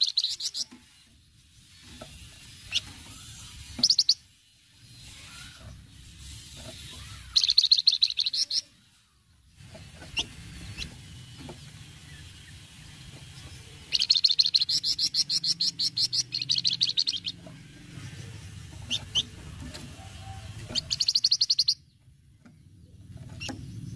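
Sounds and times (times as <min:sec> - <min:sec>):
single bird chirps: 0:00.0 - 0:00.7, 0:02.6 - 0:04.3, 0:06.8 - 0:09.0, 0:13.9 - 0:19.4, 0:20.3 - 0:21.9
songbird rattling chattering trills: 0:00.0 - 0:09.0, 0:09.6 - 0:21.9.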